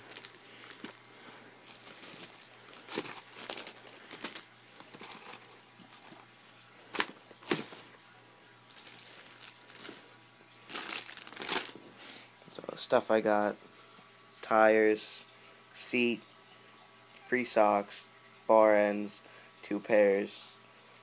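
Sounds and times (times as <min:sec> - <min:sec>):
packaging rustling: 0:00.0 - 0:07.9, 0:08.7 - 0:11.8.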